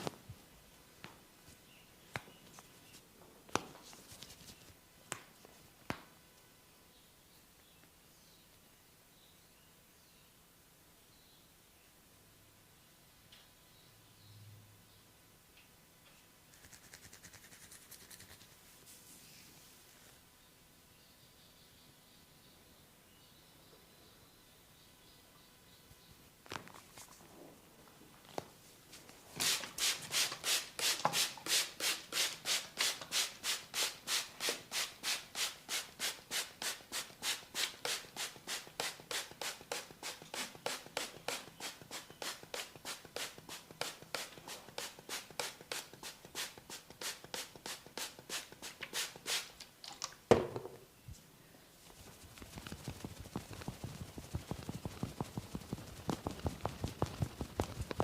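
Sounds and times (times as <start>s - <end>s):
hands rubbing through hair: 16.5s - 20.0s, 51.8s - 58.0s.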